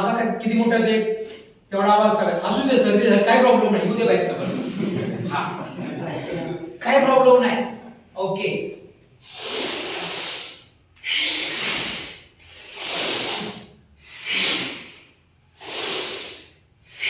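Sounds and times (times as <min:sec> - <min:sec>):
forceful breaths through nose: 0:09.1 - 0:17.0.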